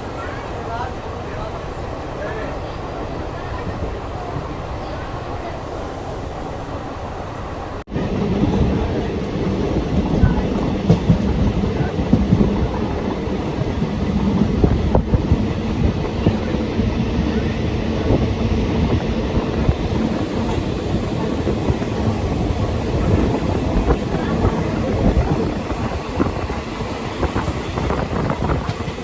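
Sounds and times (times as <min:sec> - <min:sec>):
train rumbling on track: 0:00.0 - 0:29.0
train wheel knocks: 0:10.0 - 0:13.0, 0:13.6 - 0:16.6.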